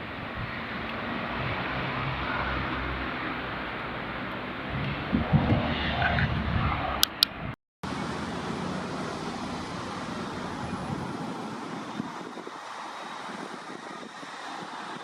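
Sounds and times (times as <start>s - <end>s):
traffic and wind hiss: 0.0s - 15.0s
vehicle passing with loud rumble: 0.0s - 15.0s
sharp clicks: 7.0s - 7.4s.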